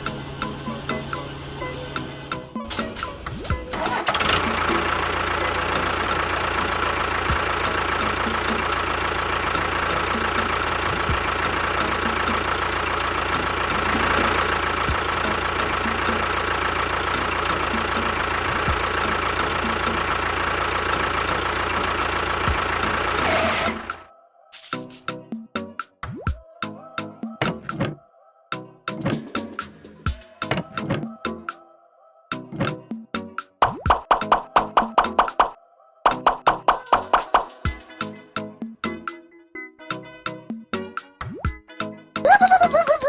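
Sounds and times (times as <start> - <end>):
small motor running: 3.8 - 24.1.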